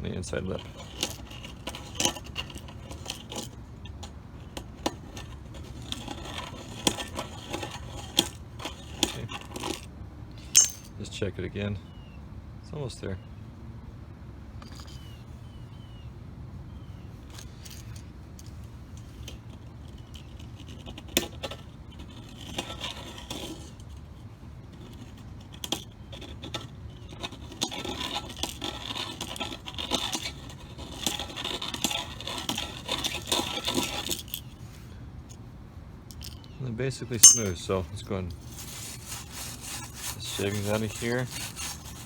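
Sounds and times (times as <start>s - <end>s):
reamer scraping metal conduit: 24.7s - 34.2s, 37.2s - 42.0s.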